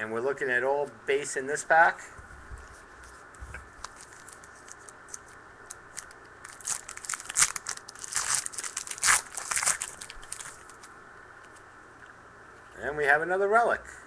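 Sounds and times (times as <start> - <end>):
foil wrapper tearing and crinkling: 3.8 - 10.9.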